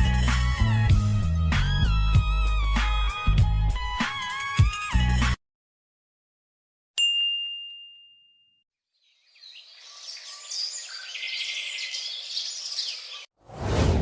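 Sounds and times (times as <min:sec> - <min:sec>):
bell ding: 0:07.0 - 0:08.6
birds chirping: 0:09.0 - 0:13.3.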